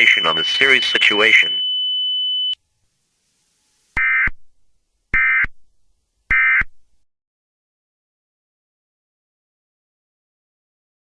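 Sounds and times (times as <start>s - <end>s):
steady high tone: 0.0s - 1.6s.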